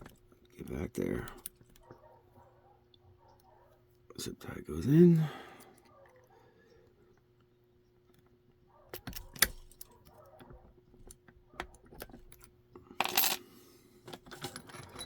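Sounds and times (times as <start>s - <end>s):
lock clicking being picked: 8.9s - 13.4s.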